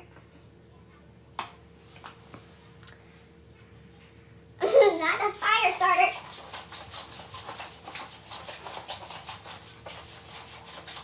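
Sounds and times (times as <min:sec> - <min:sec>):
hands rubbing together: 0:05.2 - 0:11.0.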